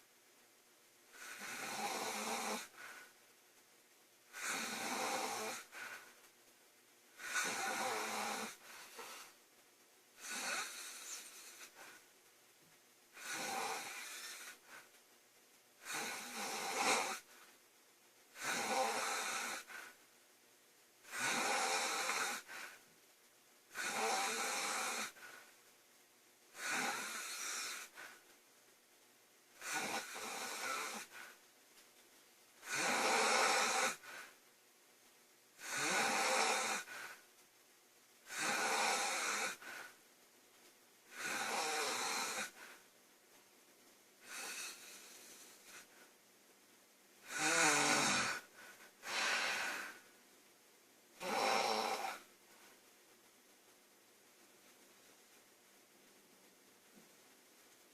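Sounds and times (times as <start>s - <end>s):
woman snoring loudly: 1.1s - 3.0s, 4.3s - 6.0s, 7.2s - 9.3s, 10.2s - 11.9s, 13.2s - 14.8s, 15.8s - 17.3s, 18.3s - 19.9s, 21.0s - 22.7s, 23.7s - 25.3s, 26.5s - 28.0s, 29.6s - 31.2s, 32.6s - 34.3s, 35.6s - 37.2s, 38.3s - 39.9s, 41.1s - 42.6s, 44.2s - 45.8s, 47.2s - 50.0s, 51.2s - 52.3s.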